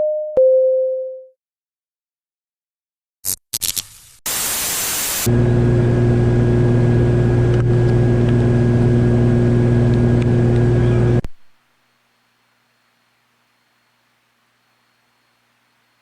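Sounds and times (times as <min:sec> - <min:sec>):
hiss: 0:04.3 - 0:05.3
aircraft engines droning in cabin: 0:05.3 - 0:11.2.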